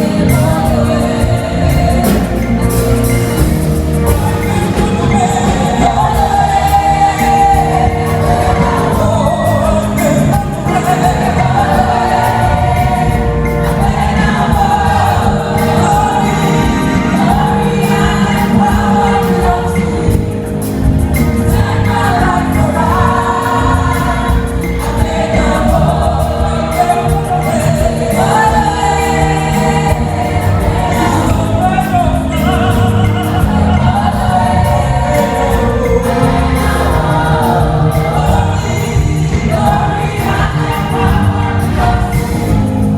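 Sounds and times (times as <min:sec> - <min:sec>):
gospel choir singing: 0:00.0 - 0:42.9
live band with bass and drums: 0:00.0 - 0:42.9.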